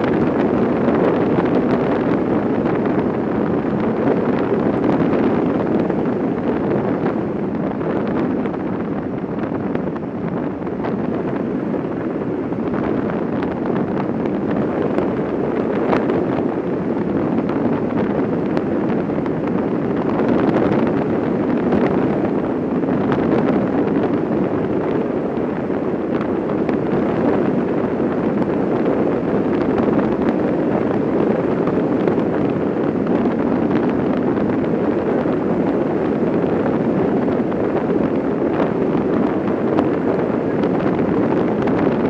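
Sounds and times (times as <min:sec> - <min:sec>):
rolling road noise: 0:00.0 - 0:42.0
wind rushing: 0:00.0 - 0:42.0.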